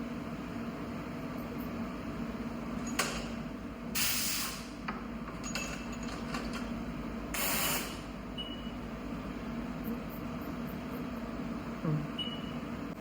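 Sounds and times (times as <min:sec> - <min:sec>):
short bursts of hiss: 0:07.4 - 0:08.0.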